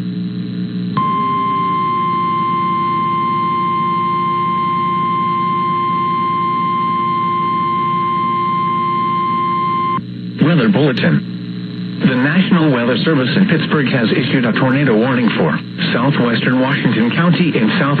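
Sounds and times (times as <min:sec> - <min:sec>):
low background hum: 0:00.0 - 0:18.0
steady alarm tone: 0:01.0 - 0:10.0.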